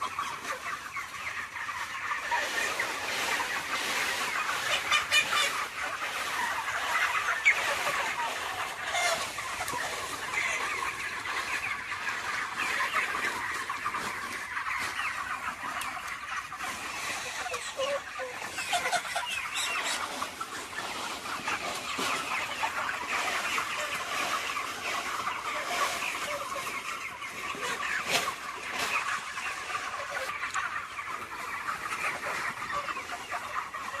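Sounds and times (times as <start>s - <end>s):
chickens chirping: 0.0s - 34.0s.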